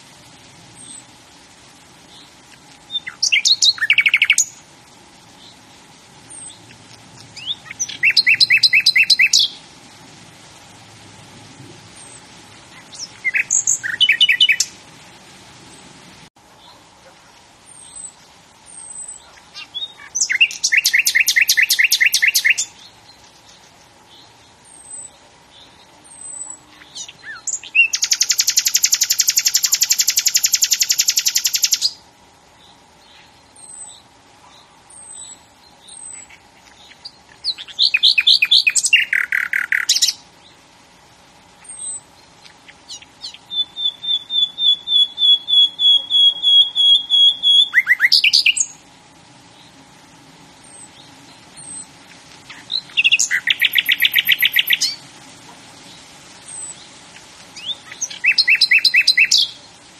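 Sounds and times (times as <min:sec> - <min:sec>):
bird singing rapid phrases: 0:02.1 - 0:04.6, 0:06.3 - 0:09.6, 0:12.0 - 0:14.8, 0:17.7 - 0:32.0, 0:32.7 - 0:40.2, 0:41.6 - 0:48.8, 0:50.6 - 0:55.0, 0:55.8 - 0:59.8
short high bird chirps: 0:07.4 - 0:09.6, 0:42.9 - 0:48.7, 0:52.5 - 0:55.0.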